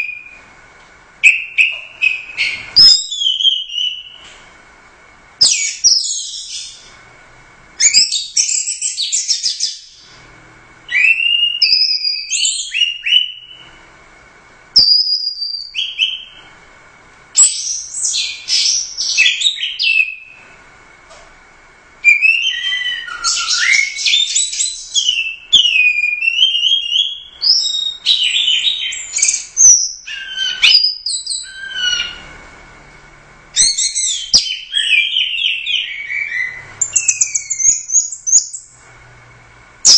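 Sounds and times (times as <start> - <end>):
thrush singing whistled phrases: 1.2 - 4.2, 7.8 - 10.1, 10.9 - 13.8, 14.8 - 16.5, 17.4 - 20.5, 22.0 - 32.2, 33.6 - 38.7.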